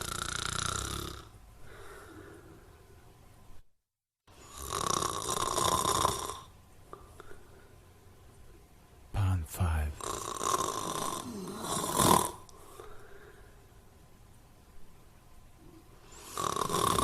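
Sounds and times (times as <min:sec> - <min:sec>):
loud snoring: 0:00.0 - 0:01.3, 0:04.4 - 0:06.5, 0:10.0 - 0:12.4, 0:16.2 - 0:17.0
quiet breathing: 0:01.6 - 0:03.1, 0:06.9 - 0:08.3, 0:12.5 - 0:13.9.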